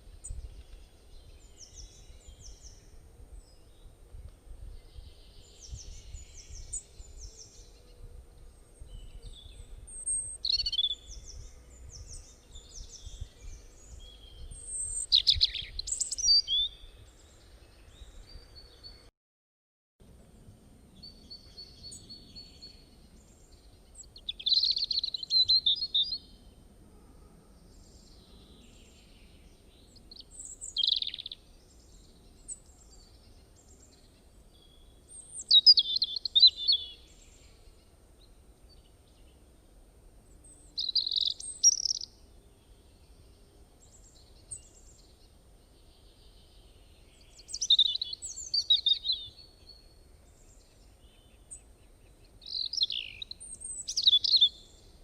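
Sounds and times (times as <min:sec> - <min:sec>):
songbird singing: 0:00.0 - 0:19.1, 0:20.0 - 0:55.0
faint background hiss: 0:20.0 - 0:55.0.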